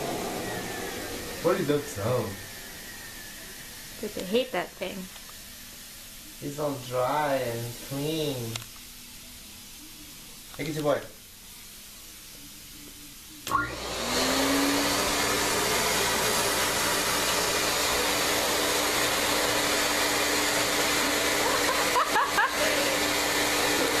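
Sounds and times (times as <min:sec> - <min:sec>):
vacuum cleaner motor running: 0:00.0 - 0:04.5, 0:13.5 - 0:24.0.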